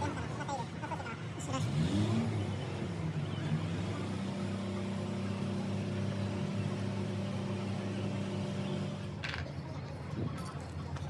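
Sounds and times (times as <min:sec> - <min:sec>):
engine running with low hum: 0:01.2 - 0:11.0.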